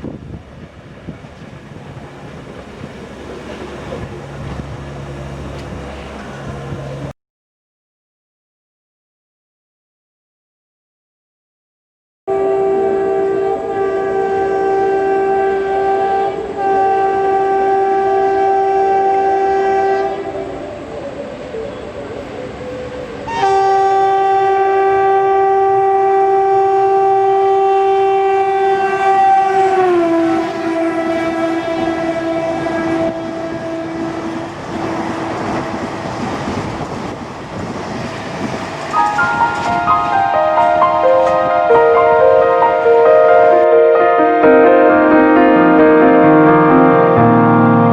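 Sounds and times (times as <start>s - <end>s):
train wheels clattering over rail joints: 0.1s - 7.1s, 29.5s - 41.5s
train horn blasts: 1.7s - 7.1s, 12.3s - 21.0s, 23.2s - 47.9s.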